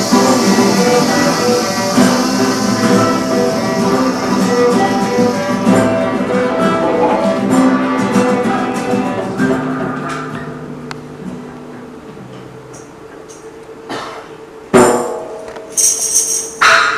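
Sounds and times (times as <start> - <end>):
held tones: 0.0 - 8.4
school ensemble playing instrumental music: 0.0 - 10.2
plucked string notes: 0.0 - 13.4.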